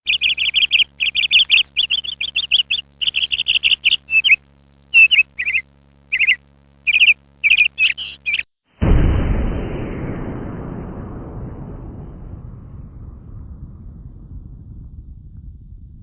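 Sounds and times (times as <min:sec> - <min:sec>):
small bird chirping: 0:00.0 - 0:08.5.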